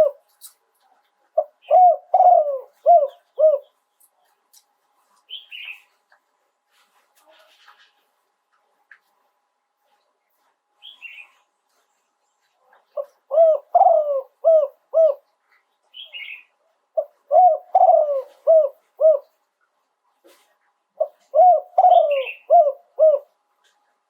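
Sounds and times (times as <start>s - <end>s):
dove cooing: 0.0s - 0.3s, 1.3s - 3.8s, 12.6s - 15.3s, 16.0s - 19.4s, 21.0s - 23.4s.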